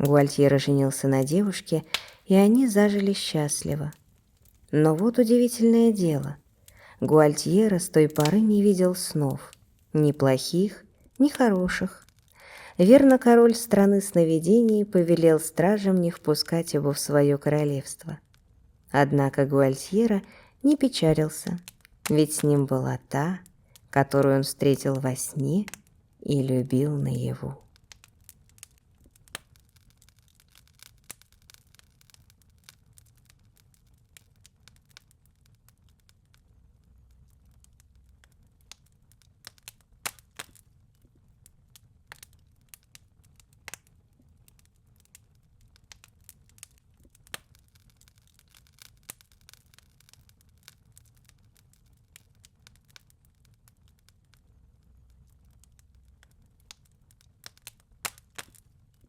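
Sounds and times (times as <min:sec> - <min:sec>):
fireplace crackling and popping: 0:00.0 - 0:59.0.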